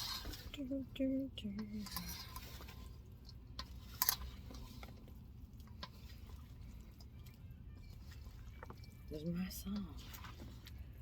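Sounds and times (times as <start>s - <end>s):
low steady hum: 0.0s - 11.0s
utensils and dishes clicking: 1.4s - 9.0s.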